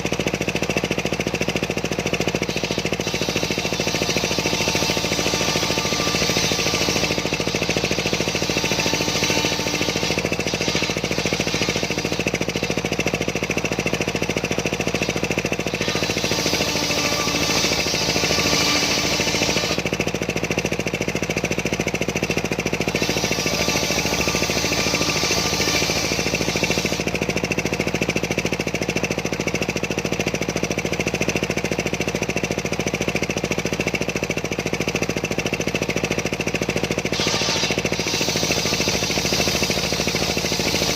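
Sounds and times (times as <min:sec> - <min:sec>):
engine-driven circular saw running: 0:00.0 - 0:40.9
saw blade hiss cutting wood: 0:02.3 - 0:20.0, 0:22.8 - 0:27.3, 0:37.0 - 0:40.9.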